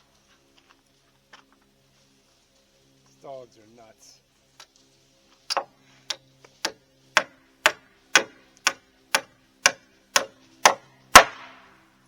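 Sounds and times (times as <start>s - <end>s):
hammer knocking on bolt: 6.6s - 8.3s.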